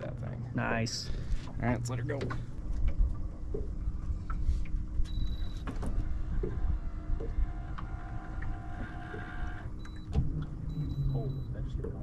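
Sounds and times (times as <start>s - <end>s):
electric motor whining: 6.0s - 9.7s.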